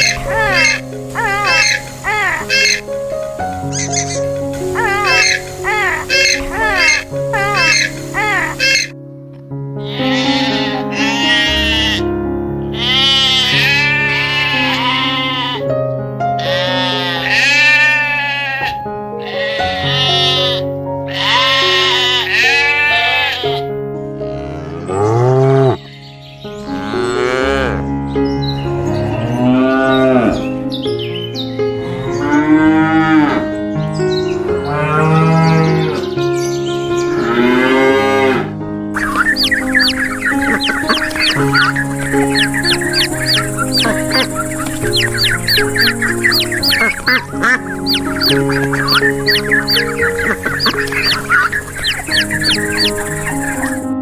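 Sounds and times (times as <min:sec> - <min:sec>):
pitched animal calls: 0:00.0 - 0:02.9, 0:03.7 - 0:08.9, 0:09.8 - 0:12.0, 0:12.7 - 0:15.7, 0:16.4 - 0:23.7, 0:39.0 - 0:54.0
background music with held chords: 0:00.0 - 0:54.0
cow mooing: 0:09.8 - 0:12.0, 0:12.6 - 0:15.6, 0:16.4 - 0:25.8, 0:26.6 - 0:27.9, 0:28.6 - 0:30.6, 0:31.8 - 0:33.4, 0:37.2 - 0:53.9.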